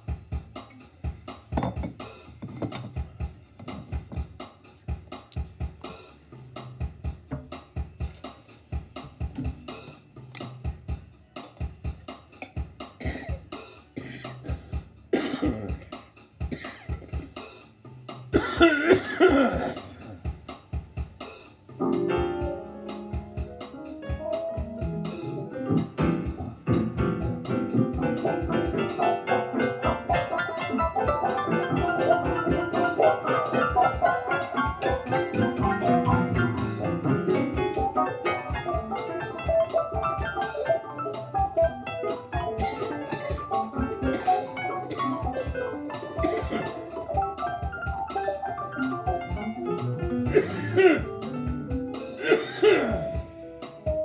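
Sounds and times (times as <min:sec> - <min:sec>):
drum beat: 0:00.0 - 0:54.0.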